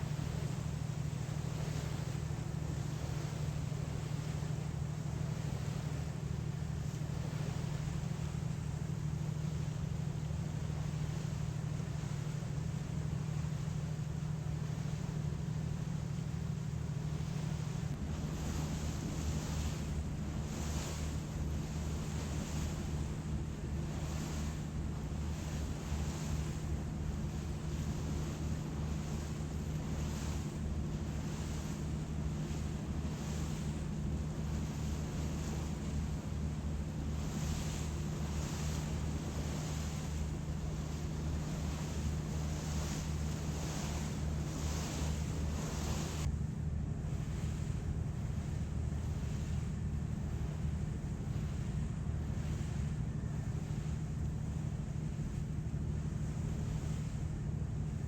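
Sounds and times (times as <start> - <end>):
hiss of water and air: 0.0 - 58.0
wind on microphone: 9.2 - 58.0
ferry engine drone: 9.4 - 58.0.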